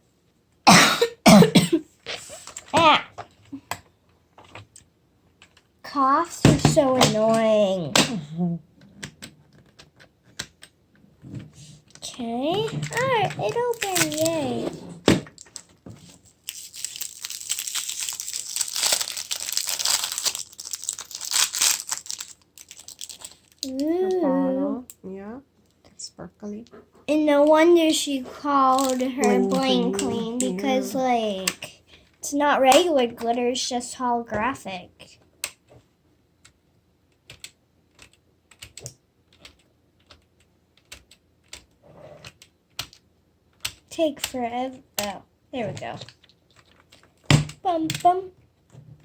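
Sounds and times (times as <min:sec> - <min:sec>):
plastic packaging crinkling and tearing: 0:12.6 - 0:14.6, 0:15.3 - 0:24.1, 0:28.7 - 0:29.7.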